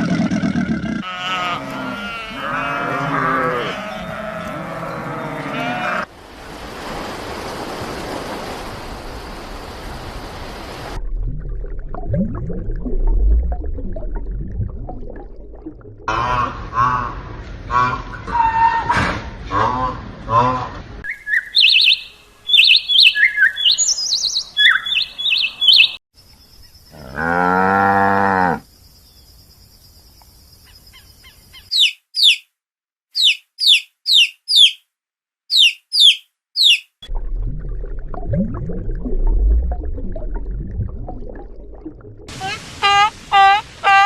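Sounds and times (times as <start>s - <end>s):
cow mooing: 1.0s - 6.1s, 26.9s - 28.6s
low rumbling noise: 8.8s - 18.3s, 37.1s - 43.3s
bird chirps: 21.1s - 26.9s, 30.6s - 32.5s, 33.2s - 34.8s, 35.5s - 37.0s
quick high falling chirps: 33.2s - 34.8s, 35.5s - 37.0s.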